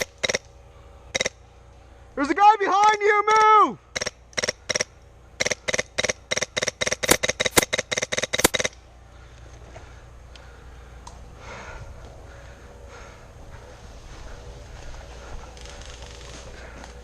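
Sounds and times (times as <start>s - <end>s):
airsoft gun firing: 5.4s - 8.7s
rustling of movement: 8.4s - 17.0s.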